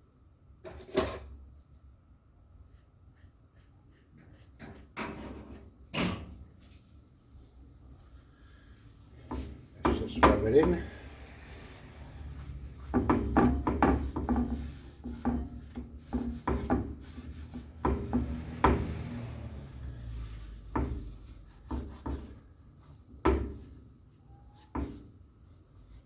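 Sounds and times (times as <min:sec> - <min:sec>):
wooden board knocking: 0:12.8 - 0:17.0.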